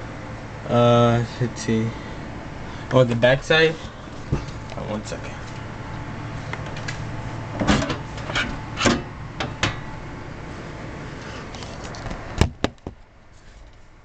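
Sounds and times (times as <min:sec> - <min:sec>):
steady low hum: 0:00.0 - 0:14.0
computer case knocking: 0:12.4 - 0:13.0.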